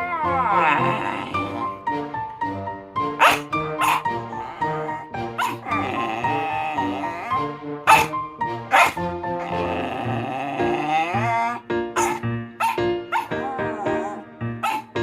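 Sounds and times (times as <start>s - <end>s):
background music: 0.0s - 15.0s
dog barking: 3.2s - 15.0s.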